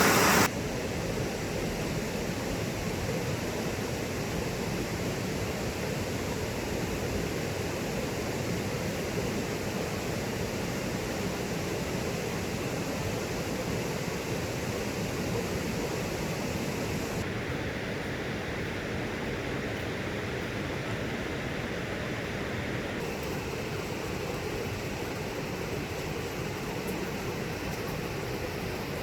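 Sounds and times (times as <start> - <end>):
stream rushing over rocks: 0.0 - 0.5.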